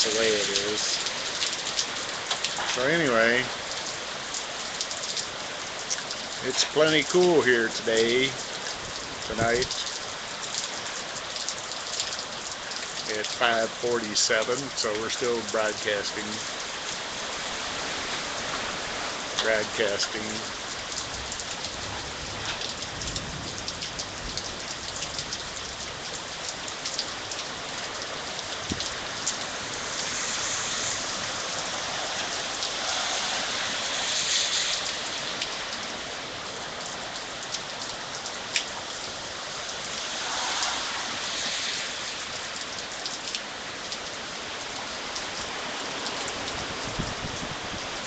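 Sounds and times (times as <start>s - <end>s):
raindrops ticking close by: 0.0s - 48.0s
steady rain falling: 0.0s - 48.0s
wind gusts: 16.4s - 26.0s, 27.1s - 37.2s, 38.6s - 48.0s.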